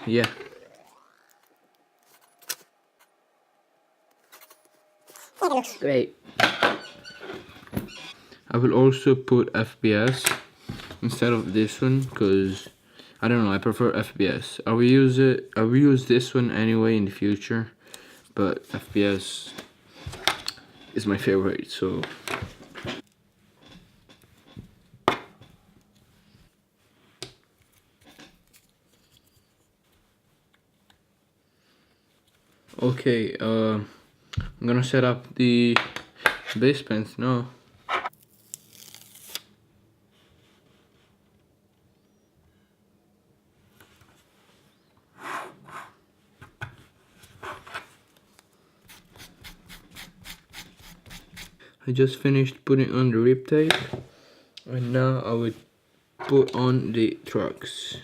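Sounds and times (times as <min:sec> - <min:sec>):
grip tape rubbing on wooden deck: 0:48.9 - 0:51.6.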